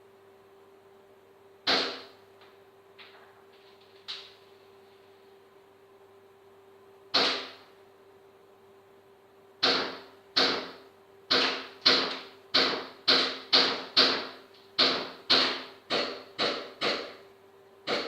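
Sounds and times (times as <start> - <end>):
airsoft gun shots: 1.6 - 2.2, 7.1 - 7.6, 9.6 - 17.2.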